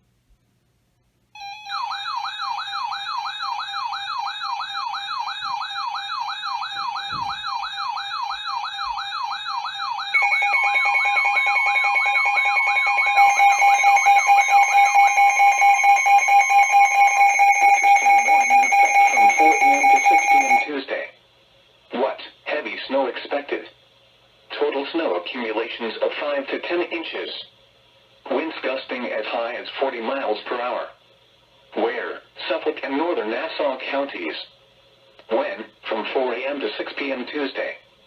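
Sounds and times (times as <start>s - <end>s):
pulsing alarm tones: 1.4s - 20.7s
wailing siren-like alert tone: 1.4s - 20.7s.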